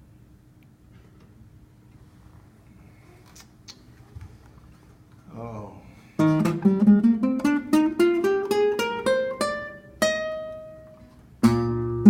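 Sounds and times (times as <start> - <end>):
plucked guitar notes: 6.2 - 12.0.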